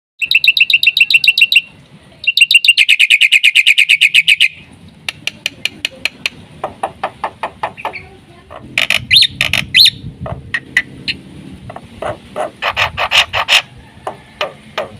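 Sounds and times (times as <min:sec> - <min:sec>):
bird chirps and trill: 0:00.2 - 0:04.6, 0:07.1 - 0:13.7
sharp clicking bird calls: 0:00.2 - 0:13.7.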